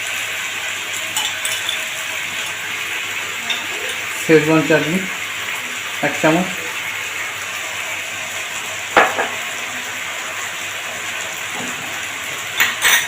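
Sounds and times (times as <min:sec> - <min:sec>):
food sizzling in a pan: 0:00.0 - 0:13.0
utensil knocking against pan: 0:09.0 - 0:09.4.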